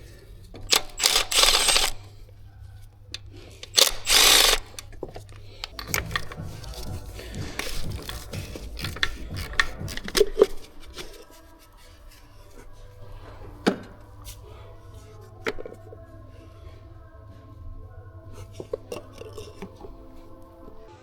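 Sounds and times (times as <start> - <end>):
tools and metal parts clanking: 0.5 - 2.1, 3.2 - 11.3.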